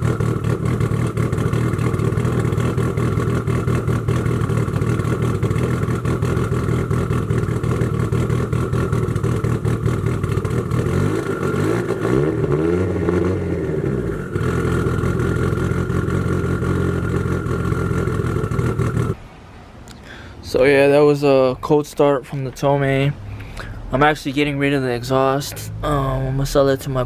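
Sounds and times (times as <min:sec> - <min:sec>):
car engine running: 0:00.0 - 0:19.3
engine revving: 0:00.0 - 0:19.3.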